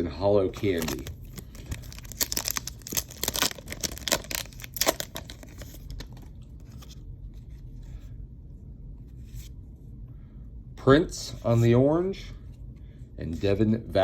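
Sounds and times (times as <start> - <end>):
wrapper tearing: 0.5 - 6.3
wrapper and cards rustling: 0.5 - 7.0.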